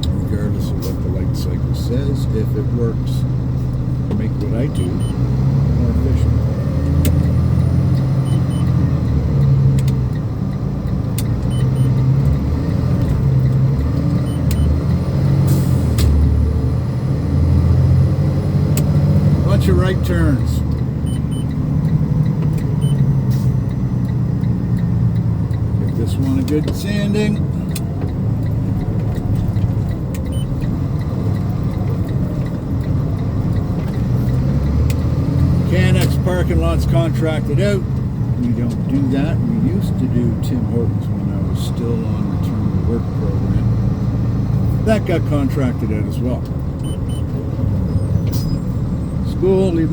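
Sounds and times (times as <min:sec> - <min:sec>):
diesel truck engine running: 0:00.0 - 0:49.9
faint regular ticking: 0:20.6 - 0:36.2.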